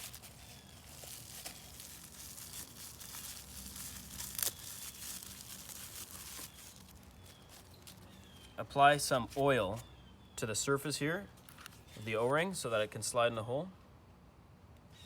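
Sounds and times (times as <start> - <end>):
packaging crinkling and tearing: 0.0 - 8.5.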